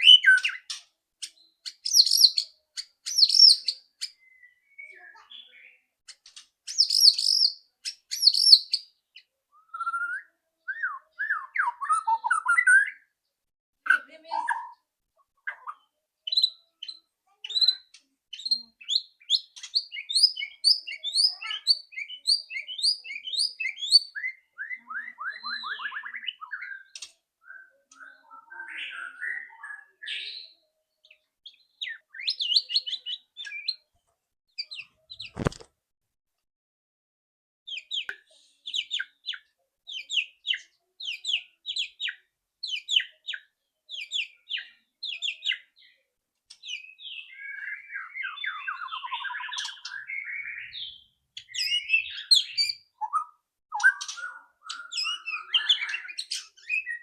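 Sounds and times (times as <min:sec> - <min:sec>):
sharp click: 0:35.2 - 0:35.7.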